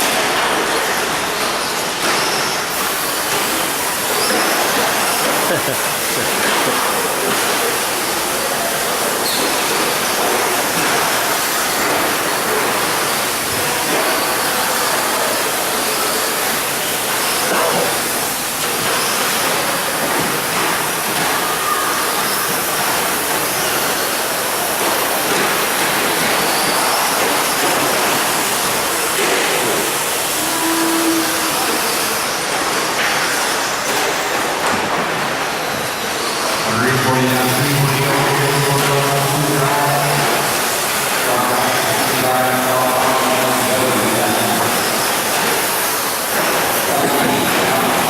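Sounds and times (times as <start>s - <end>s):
radio-control trucks racing: 36.3s - 45.6s.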